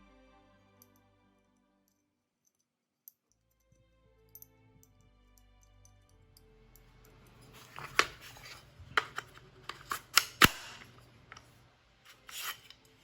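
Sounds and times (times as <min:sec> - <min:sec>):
metal parts clicking and knocking: 0:05.9 - 0:12.8.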